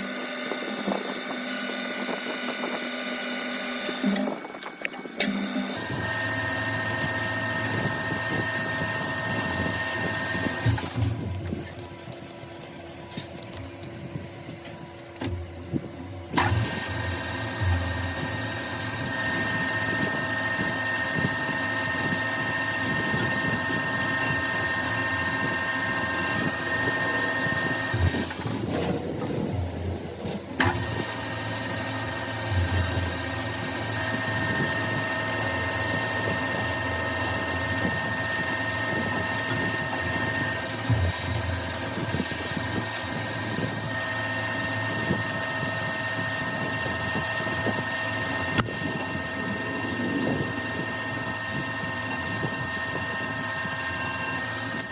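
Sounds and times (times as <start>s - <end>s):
metal lathe whine: 0.0s - 54.9s
mechanical rumble: 0.4s - 54.9s.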